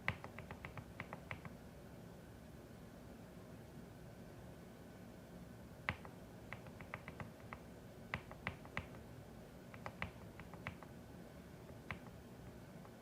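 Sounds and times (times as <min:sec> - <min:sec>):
mechanical keyboard keystrokes: 0:05.9 - 0:09.0.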